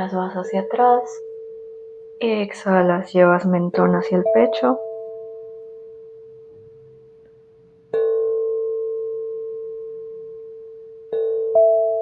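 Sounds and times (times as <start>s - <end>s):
bell-like ringing tone: 0.2s - 2.2s, 3.9s - 7.1s, 8.0s - 12.0s.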